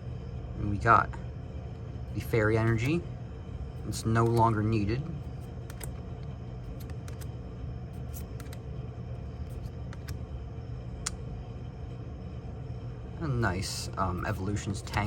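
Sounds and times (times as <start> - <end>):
steady low hum: 0.0 - 15.0
trading cards sliding and clicking: 2.5 - 3.0, 3.9 - 7.4, 8.0 - 8.7, 9.3 - 10.2, 14.2 - 15.0.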